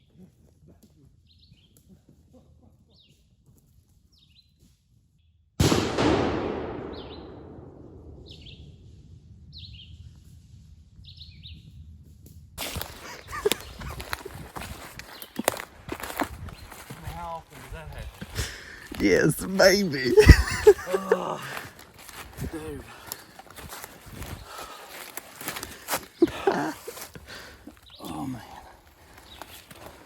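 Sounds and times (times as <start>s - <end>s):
shotgun blast with echo: 5.6s - 8.6s
people moving through brush: 12.6s - 30.0s
small birds chirping: 12.9s - 20.2s, 22.4s - 30.0s.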